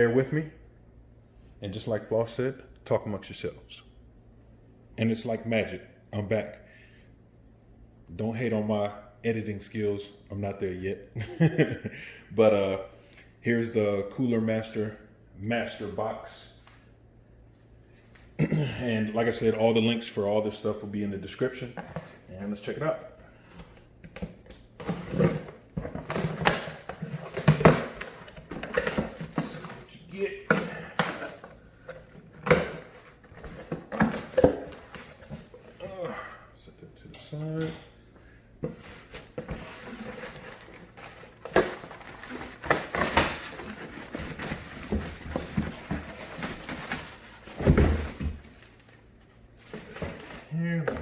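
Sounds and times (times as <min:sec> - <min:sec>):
cardboard and plastic rustling: 0:23.5 - 0:35.8, 0:38.6 - 0:51.0.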